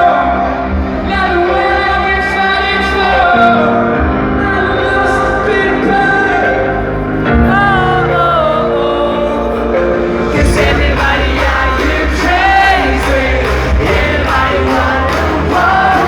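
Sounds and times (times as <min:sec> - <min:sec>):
live rock band with singing: 0:00.0 - 0:16.0.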